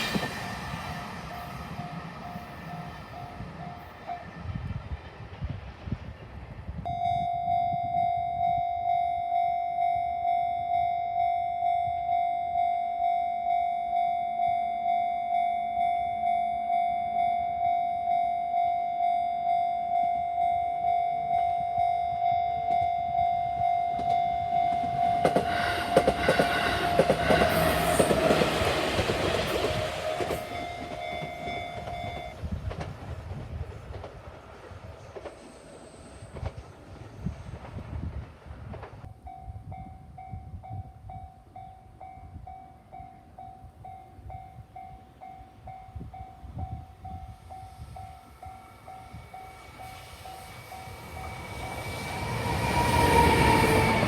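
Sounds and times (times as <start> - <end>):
train wheels clattering: 0.0 - 6.5, 24.0 - 39.1
level crossing warning bell: 0.1 - 4.5, 6.8 - 32.4, 39.1 - 54.0.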